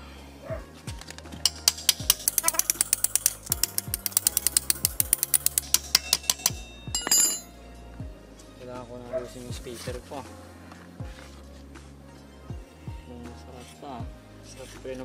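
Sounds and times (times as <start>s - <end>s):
faint background music: 0.0s - 15.0s
ratchet wrench clicking: 1.4s - 7.4s.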